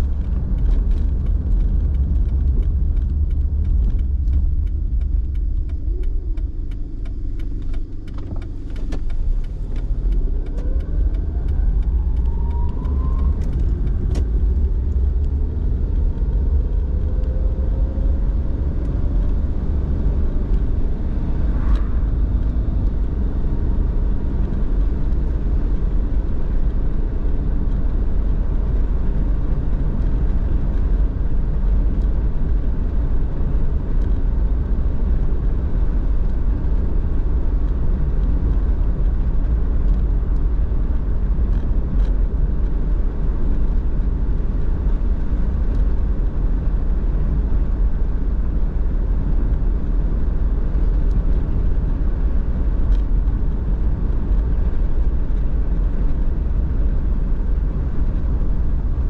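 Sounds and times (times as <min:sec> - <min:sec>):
car engine and tyre rumble: 0:00.0 - 0:59.0
faint ticks: 0:00.6 - 0:12.7.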